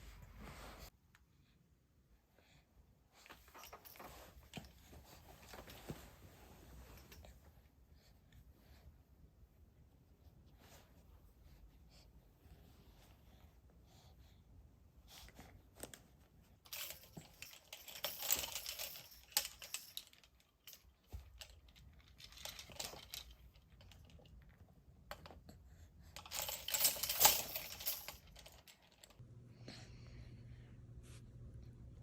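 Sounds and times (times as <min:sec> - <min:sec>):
rapid small clicks and rustling: 0:15.7 - 0:25.4, 0:26.2 - 0:29.2.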